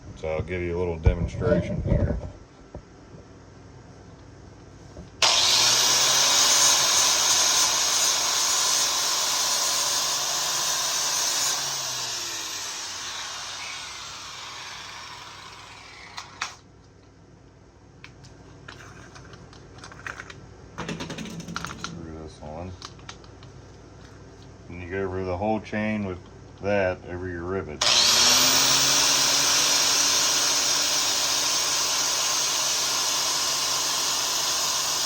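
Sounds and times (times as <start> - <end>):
power grinder abrading steel: 5.2 - 16.6, 27.8 - 35.0.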